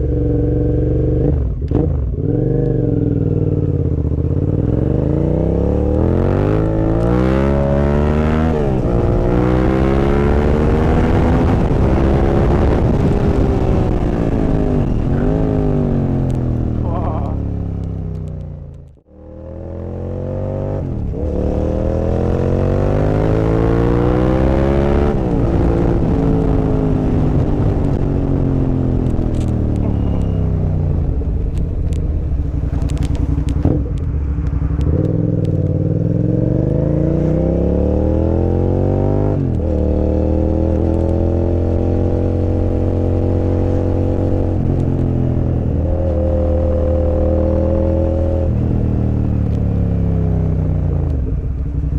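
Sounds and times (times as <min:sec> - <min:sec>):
motorcycle engine accelerating: 0:00.0 - 0:51.9.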